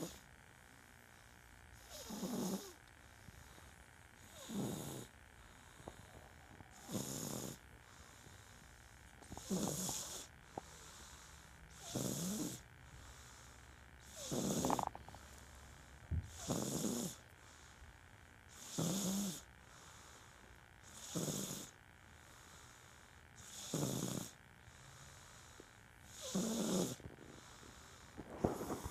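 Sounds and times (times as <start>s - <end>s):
loud snoring: 0.0s - 0.2s, 1.8s - 2.8s, 4.2s - 8.6s, 9.2s - 15.4s, 16.1s - 17.3s, 18.5s - 20.2s, 20.8s - 21.8s, 23.4s - 28.9s.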